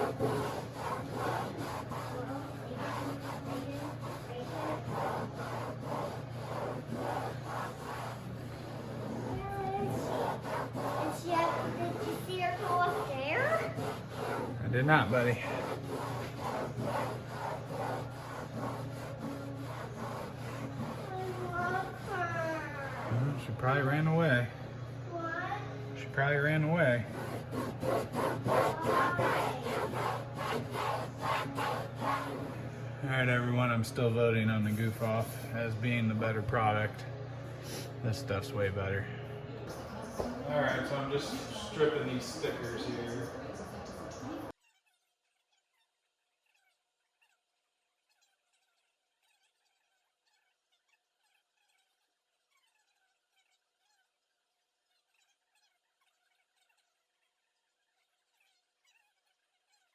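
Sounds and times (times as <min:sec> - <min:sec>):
rhythmic scraping on boat deck: 0:00.0 - 0:23.8, 0:26.8 - 0:33.7
child's voice: 0:02.1 - 0:05.0, 0:09.2 - 0:10.4, 0:11.0 - 0:14.0, 0:21.0 - 0:23.1, 0:25.1 - 0:25.8, 0:28.6 - 0:30.0.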